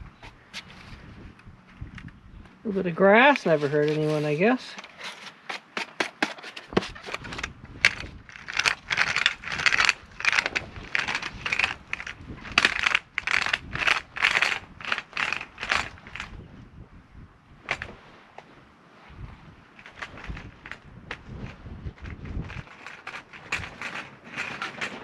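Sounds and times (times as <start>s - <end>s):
sweeper crunching over gravel: 2.6s - 16.1s.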